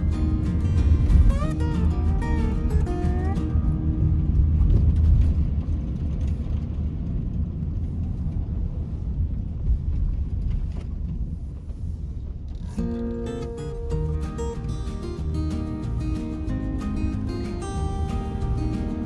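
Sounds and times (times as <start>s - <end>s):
low outdoor rumble: 0.0s - 19.0s
background music: 12.8s - 19.0s.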